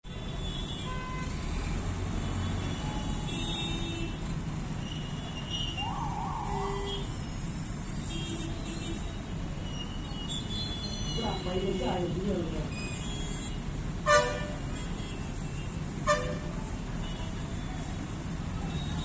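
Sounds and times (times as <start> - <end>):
low street traffic rumble: 0.0 - 19.0
warbling siren-like tone: 5.8 - 6.9.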